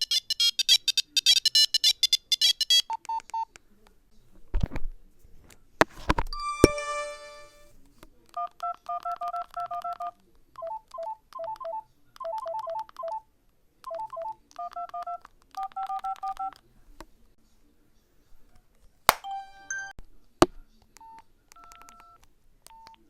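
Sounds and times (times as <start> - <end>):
phone ringing tone: 6.4 - 7.7
touch-tone dialing beeps: 8.4 - 13.2, 13.9 - 16.6, 21.0 - 23.0
phone click: 19.1 - 19.4.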